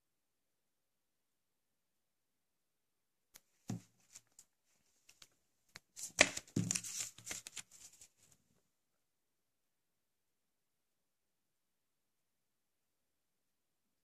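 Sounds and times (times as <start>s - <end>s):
packaging rustling: 6.0s - 8.2s.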